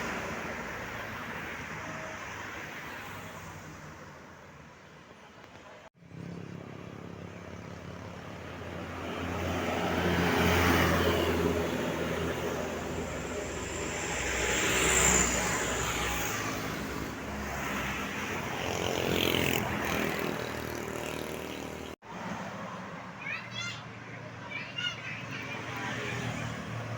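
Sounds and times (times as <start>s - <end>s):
heavy vehicles driving past: 6.0s - 23.3s.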